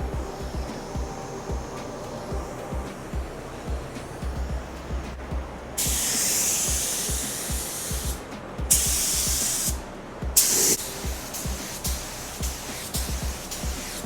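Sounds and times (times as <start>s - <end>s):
background music with steady beat: 0.0s - 14.0s
paint spray gun hissing: 5.8s - 9.8s, 10.4s - 14.0s.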